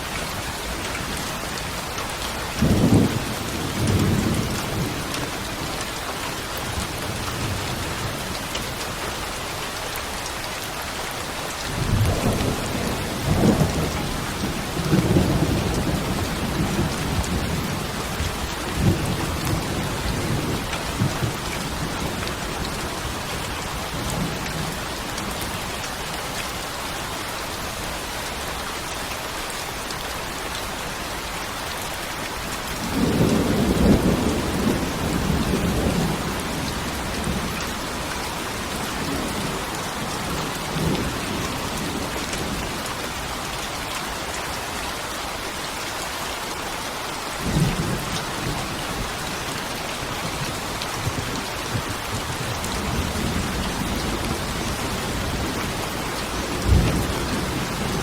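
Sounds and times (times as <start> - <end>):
heavy rain: 0.0 - 58.0
thunder rumbling: 32.8 - 42.9, 47.4 - 58.0.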